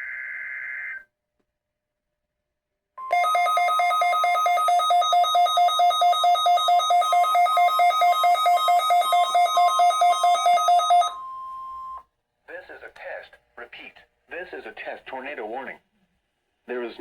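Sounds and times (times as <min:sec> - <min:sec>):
steady high alarm tone: 0:03.0 - 0:12.0.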